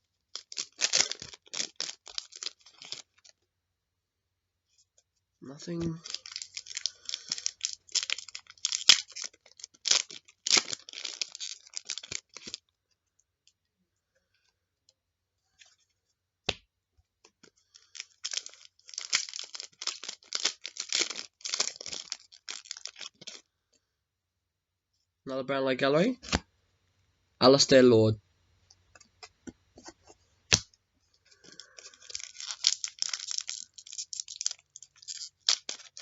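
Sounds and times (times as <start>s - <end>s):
card pack wrapper tearing and crinkling: 0.3s - 3.4s, 5.9s - 12.7s, 17.7s - 23.5s, 31.3s - 36.0s.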